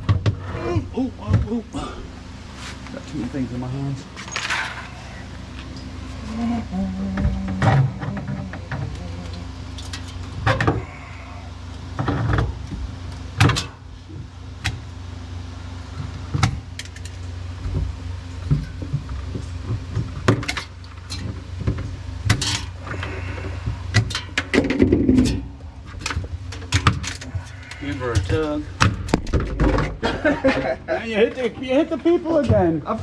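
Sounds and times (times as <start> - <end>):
low hum: 0.0 - 32.9
metal parts clanking: 4.1 - 5.9.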